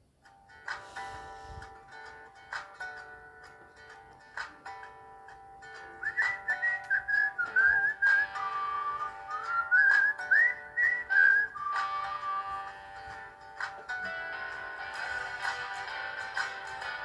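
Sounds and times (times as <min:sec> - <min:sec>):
held chords: 0:00.1 - 0:17.0
whistled ringtone melody: 0:05.7 - 0:17.0.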